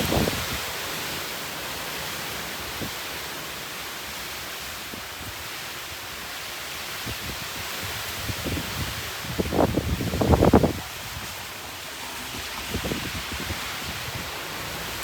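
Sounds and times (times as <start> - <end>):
wind rushing through leaves: 0.0 - 15.0.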